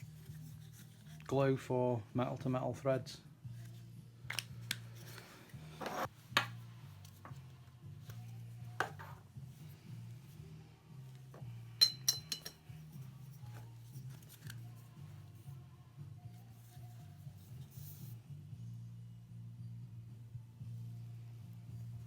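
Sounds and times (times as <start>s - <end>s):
quiet background music: 0.0s - 22.0s
metal fittings clinking: 11.8s - 13.5s.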